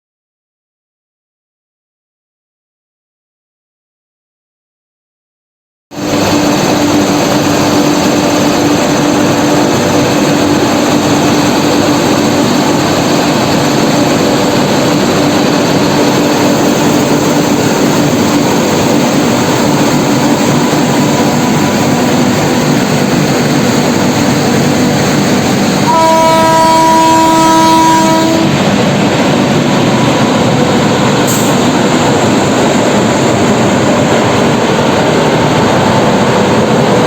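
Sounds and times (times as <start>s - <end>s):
locomotive cooling blowers rushing: 6.0s - 37.0s.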